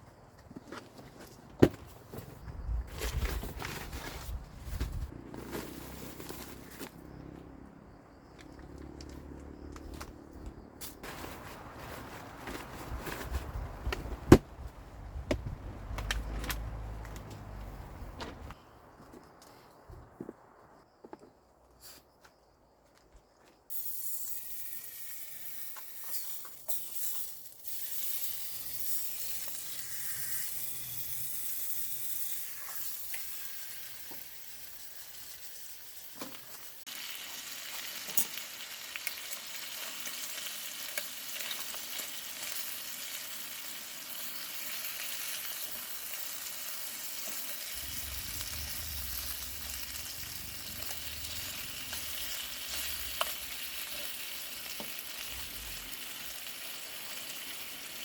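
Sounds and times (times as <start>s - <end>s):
food sizzling in a pan: 23.7s - 58.0s.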